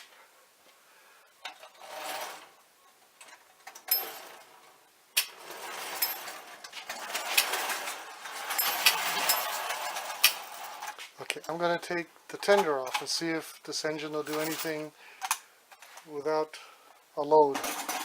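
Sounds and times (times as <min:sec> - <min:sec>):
toy handling clicks and rattles: 0:05.2 - 0:11.0.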